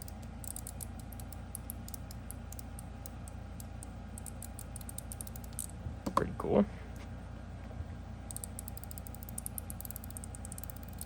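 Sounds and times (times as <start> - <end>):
fidget slider clicking: 0.0 - 5.7, 8.3 - 11.0.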